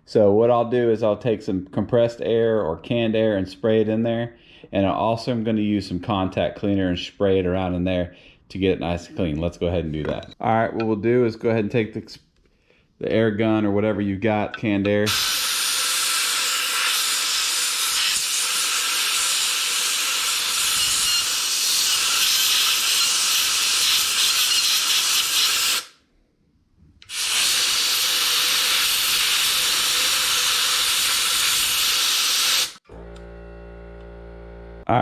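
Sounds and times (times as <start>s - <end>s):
compressed air hissing: 15.1s - 25.9s, 27.0s - 32.8s.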